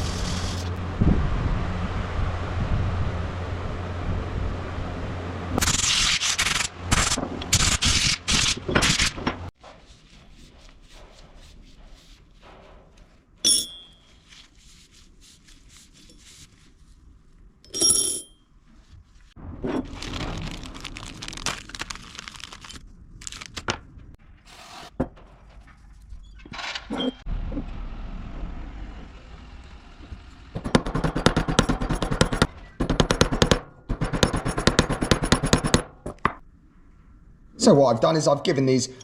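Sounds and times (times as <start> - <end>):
ringing metal clinks: 13.4 - 14.1.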